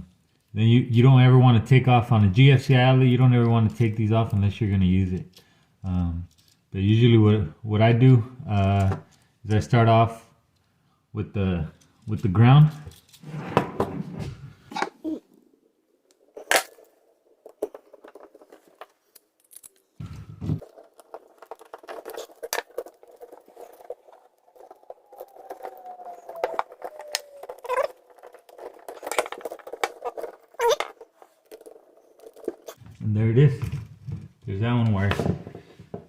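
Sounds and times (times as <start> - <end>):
wires clicking and scraping: 2.1 - 6.8, 8.4 - 9.9, 11.6 - 36.0.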